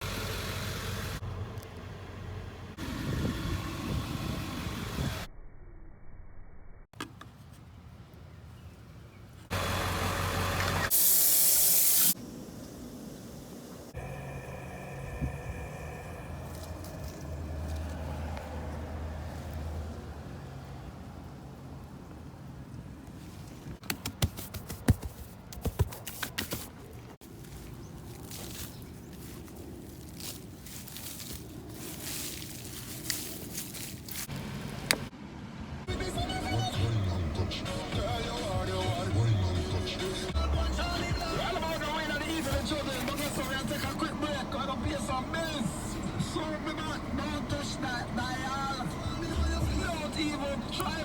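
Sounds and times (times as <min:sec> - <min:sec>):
water running and spraying: 0:10.9 - 0:12.2
steady low hum: 0:12.1 - 0:18.8.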